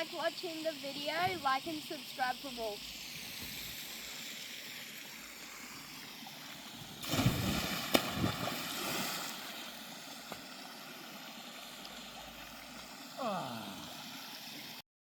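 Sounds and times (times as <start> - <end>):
water splashing: 0.8 - 14.8
water washing: 6.5 - 10.5.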